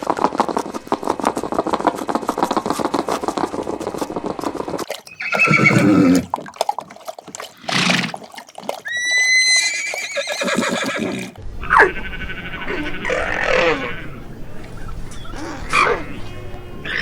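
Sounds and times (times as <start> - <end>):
horse whinnying: 5.1 - 6.4, 7.6 - 14.2.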